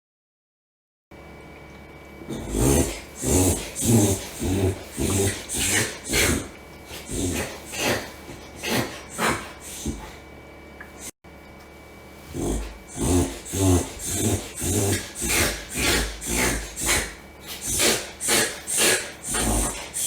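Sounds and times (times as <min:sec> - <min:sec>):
dog reverse sneezing: 0:02.3 - 0:10.3, 0:12.3 - 0:20.0.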